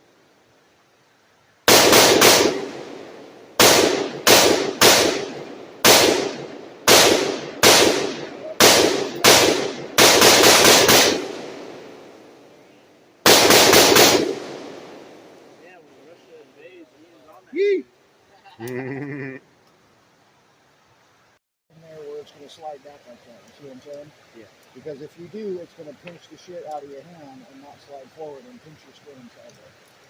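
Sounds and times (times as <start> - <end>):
gunshots with echo: 1.7 - 3.0, 3.6 - 11.8, 13.2 - 15.0.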